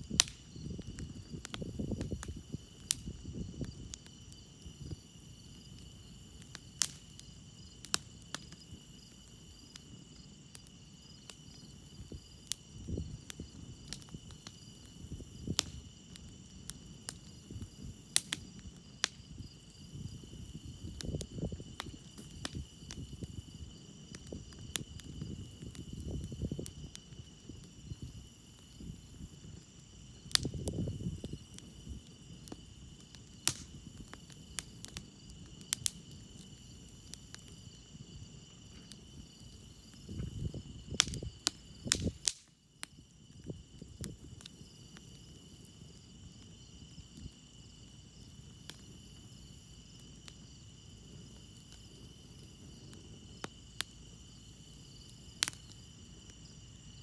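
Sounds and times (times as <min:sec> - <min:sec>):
campfire crackling: 0:00.0 - 0:57.0
crickets chirping: 0:00.0 - 0:57.0.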